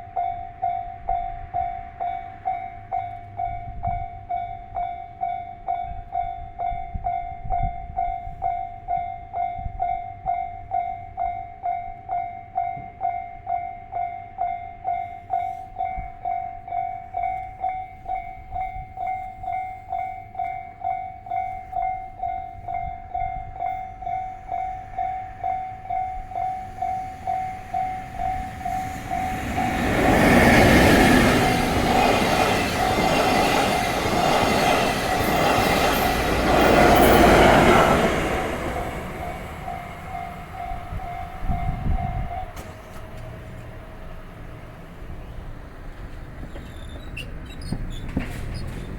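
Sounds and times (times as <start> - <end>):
railway crossing alarm dinging: 0.0 - 48.9
train wheels rumbling on rails: 15.0 - 48.9.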